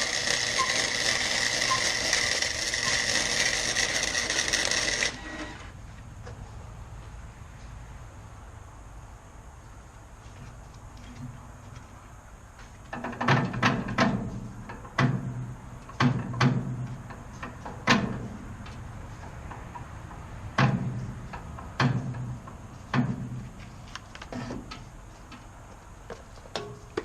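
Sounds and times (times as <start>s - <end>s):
sharp metalwork bursts: 0.0s - 5.7s.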